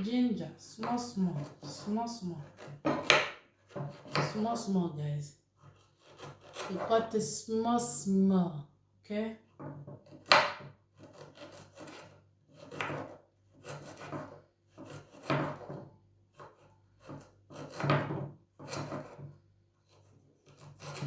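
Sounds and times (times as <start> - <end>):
knife cutting ginger: 0.6 - 4.8, 5.6 - 7.2, 10.0 - 19.3, 19.9 - 21.0.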